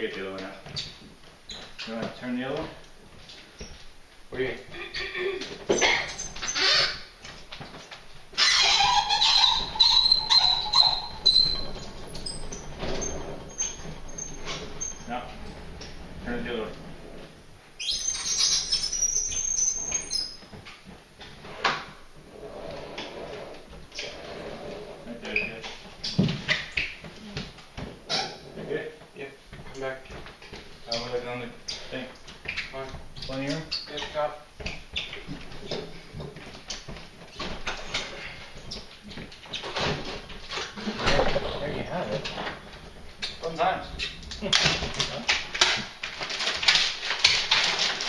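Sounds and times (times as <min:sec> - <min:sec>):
refrigerator scraping on floor: 0:11.0 - 0:17.4, 0:22.2 - 0:25.3.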